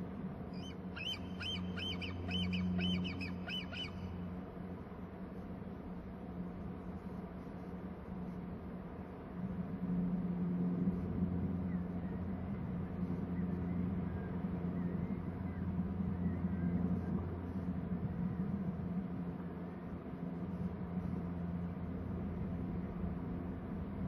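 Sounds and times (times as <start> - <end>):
steady low hum: 0.0 - 24.0
faint bird chirps: 0.6 - 4.2.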